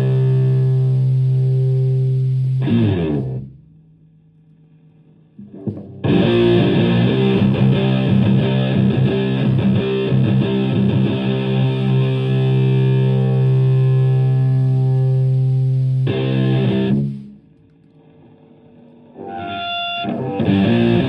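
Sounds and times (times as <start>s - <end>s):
sustained guitar chord: 0.0s - 3.5s, 5.4s - 17.2s
fuzzed electric guitar riff: 0.0s - 3.6s, 5.4s - 17.5s, 19.2s - 21.0s.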